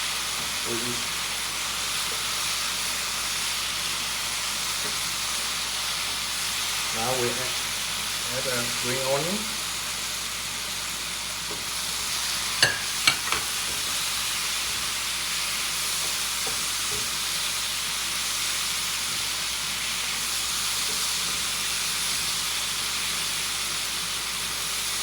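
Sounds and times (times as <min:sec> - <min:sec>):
food sizzling in a pan: 0:00.0 - 0:25.0
utensil knocking against pan: 0:12.6 - 0:13.6.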